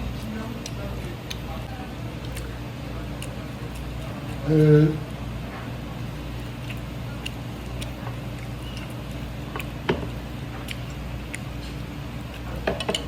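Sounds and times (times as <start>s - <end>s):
soft chewing: 0.0s - 13.0s
steady low hum: 0.0s - 13.0s.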